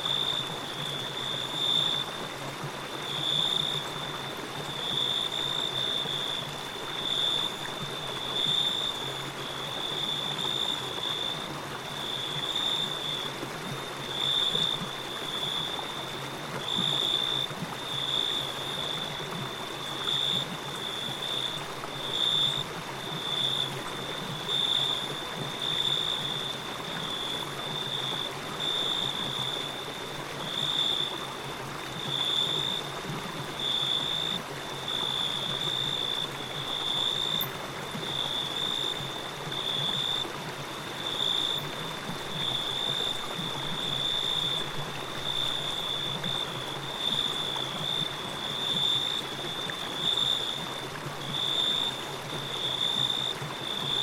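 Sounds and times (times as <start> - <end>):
running water: 0.0 - 54.0.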